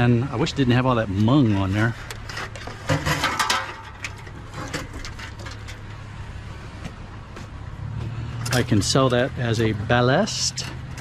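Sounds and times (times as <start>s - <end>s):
metal ballast clicks and knocks: 2.0s - 6.0s.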